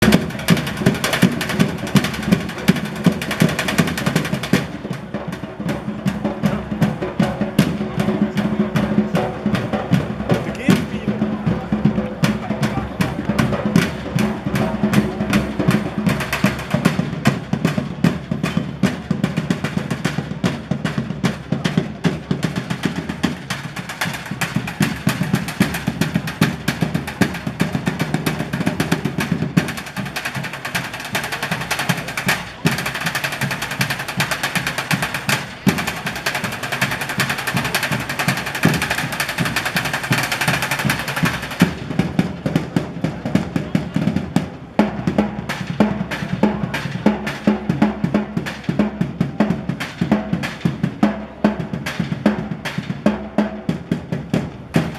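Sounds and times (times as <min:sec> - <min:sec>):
stomp-style drumming: 0:00.0 - 0:54.9.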